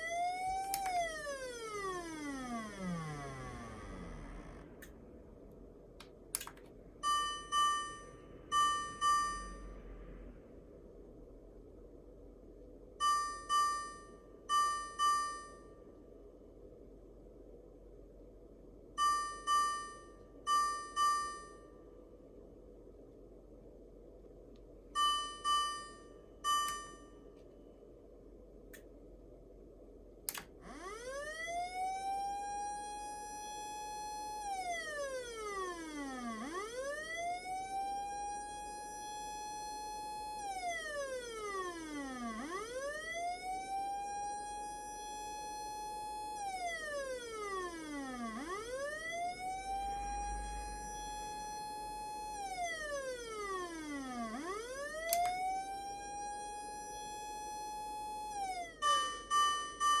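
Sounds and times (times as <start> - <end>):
electronic siren wailing: 0.0 - 4.9, 30.3 - 60.0.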